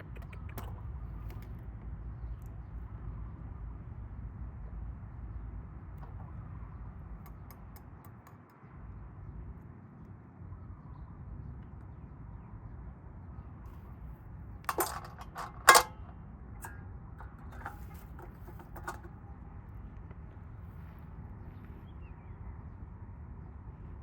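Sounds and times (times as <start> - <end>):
metallic clinks and knocks: 14.7 - 16.0, 16.6 - 19.2.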